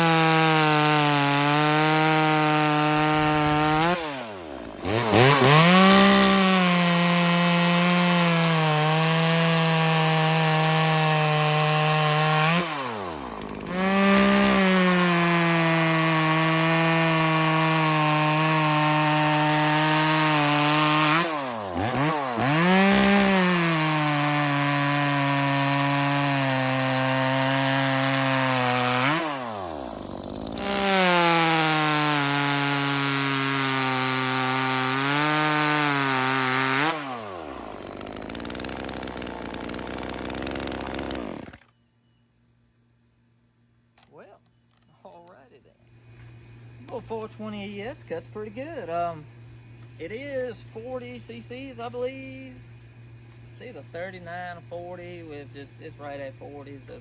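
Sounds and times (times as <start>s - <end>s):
chainsaw cutting wood: 0.0s - 41.8s.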